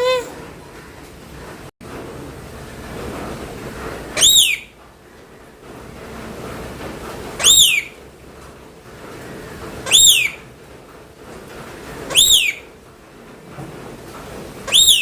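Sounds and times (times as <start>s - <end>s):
parrot whistled call: 4.2s - 4.7s, 7.4s - 8.0s, 9.9s - 10.4s, 12.1s - 12.7s, 14.7s - 15.0s.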